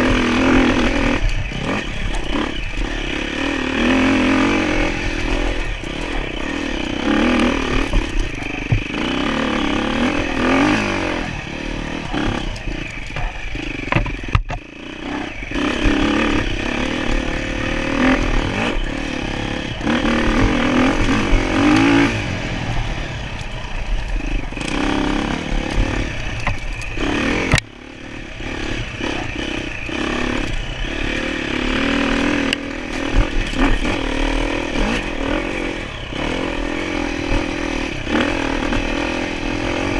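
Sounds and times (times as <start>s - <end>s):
motorcycle engine revving: 0.0s - 39.9s
rattling and knocking clatter: 12.1s - 14.7s.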